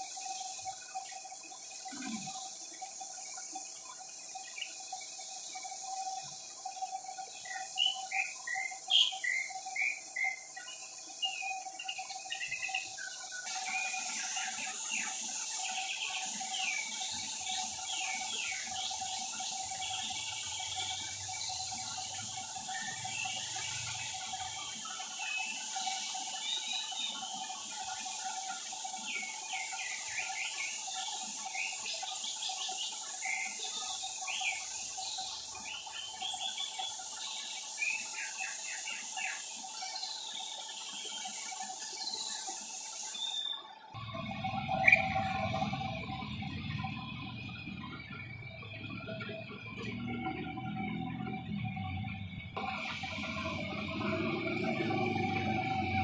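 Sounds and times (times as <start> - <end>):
wood sanding hiss: 12.3 - 43.5.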